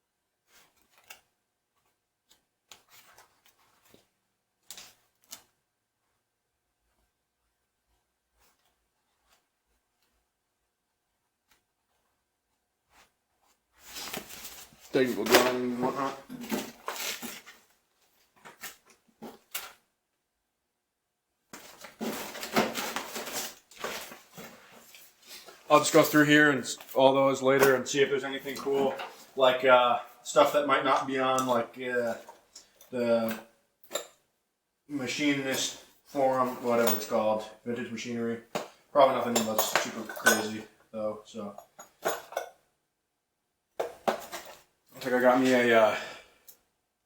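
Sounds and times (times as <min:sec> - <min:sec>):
papers rustling: 0:13.8 - 0:19.8, 0:21.5 - 0:29.4.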